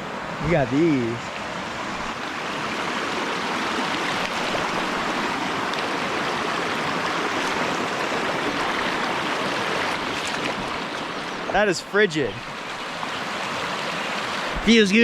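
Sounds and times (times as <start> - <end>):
fast-flowing creek rushing: 0.0 - 15.0.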